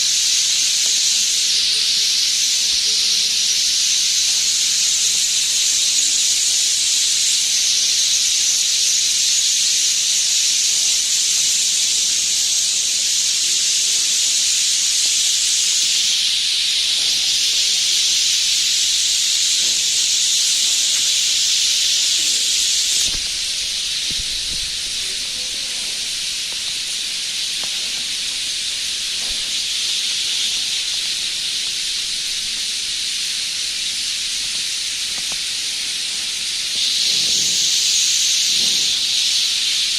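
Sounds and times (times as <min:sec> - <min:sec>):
flock of birds chirping: 0:04.3 - 0:39.9.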